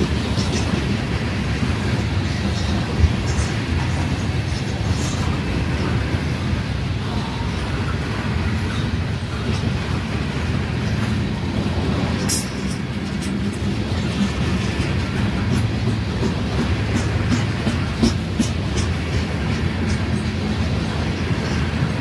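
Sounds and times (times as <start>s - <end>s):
freight train rumbling past: 0.0s - 22.0s.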